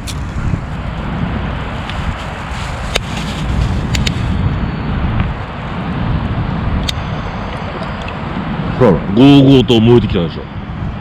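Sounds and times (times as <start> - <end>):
burning wood crackling and popping: 0.0 - 8.8
campfire flames roaring: 0.0 - 11.0.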